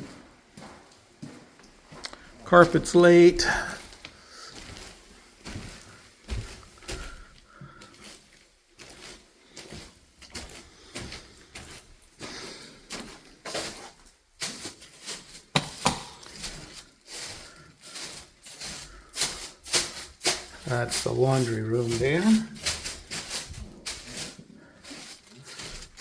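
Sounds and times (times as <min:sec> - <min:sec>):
footsteps: 0:00.0 - 0:26.0.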